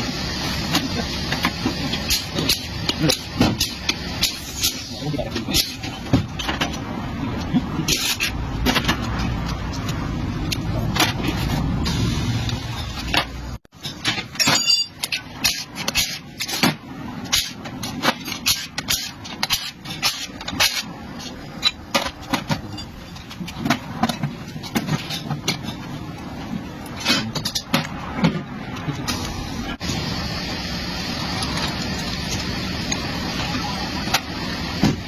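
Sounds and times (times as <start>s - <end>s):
metal tools clicking and knocking: 13.8s - 16.7s.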